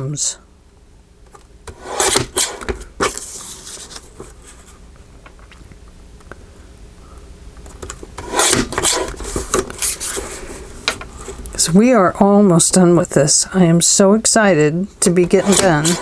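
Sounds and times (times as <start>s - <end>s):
paper rustling on a tabletop: 1.8s - 4.8s, 8.2s - 11.0s, 15.3s - 16.0s.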